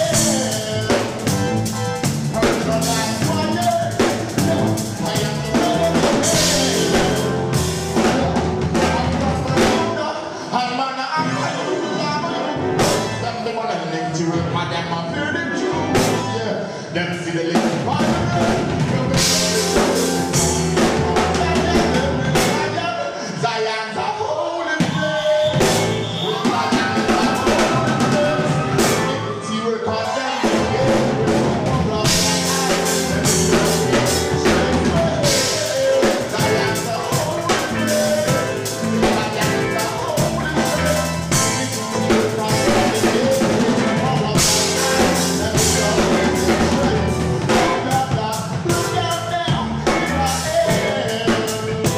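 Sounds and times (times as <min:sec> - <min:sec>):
live rock band playing: 0:00.0 - 0:24.1, 0:24.7 - 0:51.9.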